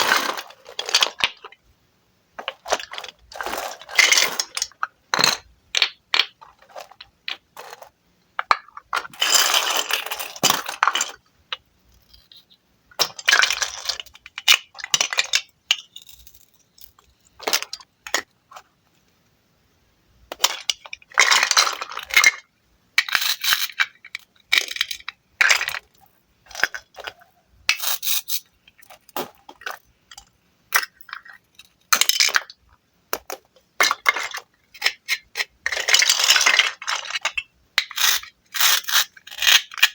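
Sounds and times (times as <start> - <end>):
wooden pieces clattering: 2.4 - 11.2.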